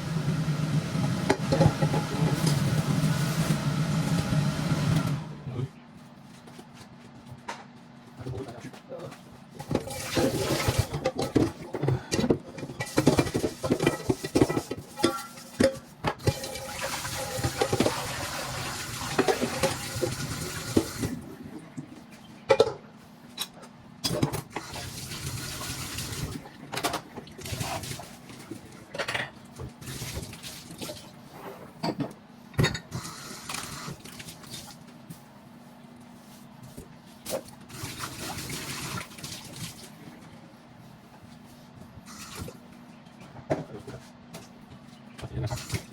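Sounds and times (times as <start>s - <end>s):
kitchenware clattering at a sink: 8.3s - 16.6s.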